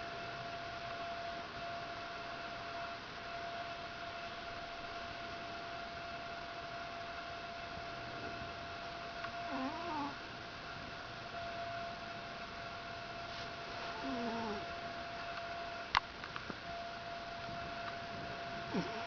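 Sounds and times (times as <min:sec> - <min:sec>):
pet whimpering: 0:09.5 - 0:10.2, 0:13.9 - 0:14.7, 0:18.7 - 0:19.0
high-pitched hum: 0:11.3 - 0:19.0.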